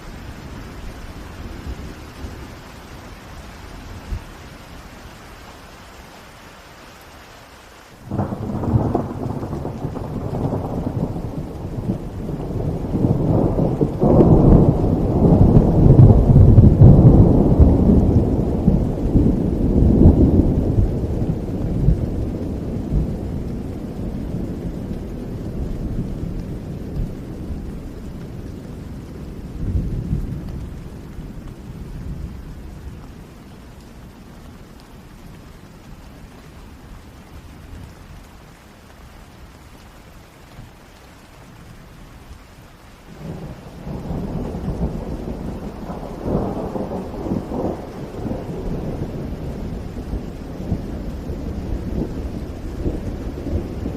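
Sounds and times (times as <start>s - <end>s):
steady rain hiss: 0.0s - 53.9s
thunder rumble: 8.1s - 38.4s, 43.1s - 53.9s.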